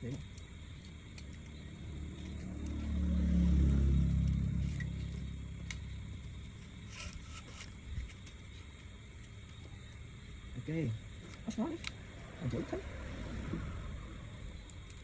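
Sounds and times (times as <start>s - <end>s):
low engine-like hum: 0.0s - 8.0s, 11.3s - 15.0s.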